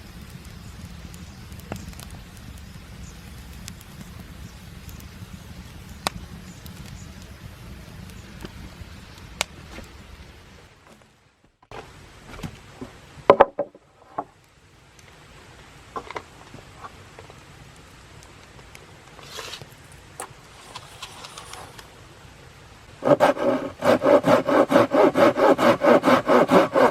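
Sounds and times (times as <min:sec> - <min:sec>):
hard objects knocking and clattering: 0:13.3 - 0:13.8.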